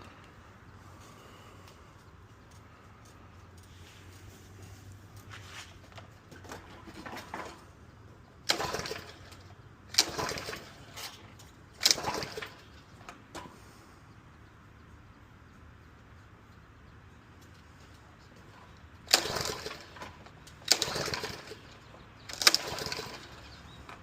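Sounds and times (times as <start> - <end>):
recoil starter cord rasping: 0.0 - 24.0
small engine turning over: 8.4 - 13.1, 19.0 - 24.0.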